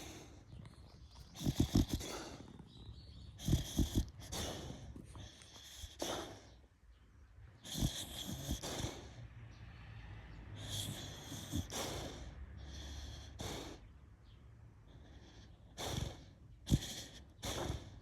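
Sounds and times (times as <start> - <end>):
dog snoring: 0.0 - 6.6, 7.6 - 9.2, 10.5 - 13.9, 14.9 - 18.0
small birds chirping: 0.0 - 18.0.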